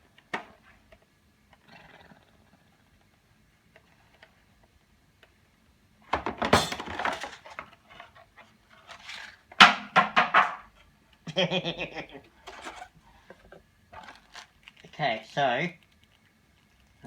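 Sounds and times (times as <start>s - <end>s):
crinkling plastic and cardboard: 6.1s - 10.6s, 12.4s - 17.0s
small knocks: 9.6s - 10.7s.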